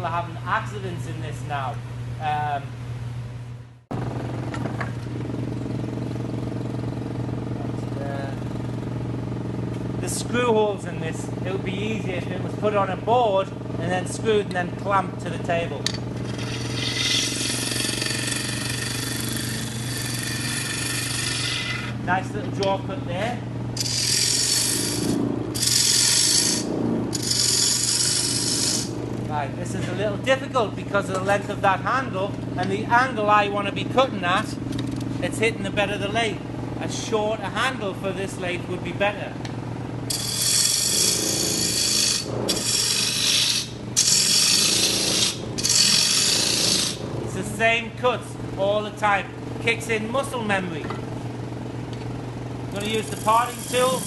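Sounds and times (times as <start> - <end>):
lathe motor hum: 3.9 - 48.7, 49.3 - 54.0
tool shaving wood on lathe: 16.2 - 22.0, 23.8 - 28.9, 40.1 - 47.0, 52.7 - 54.0.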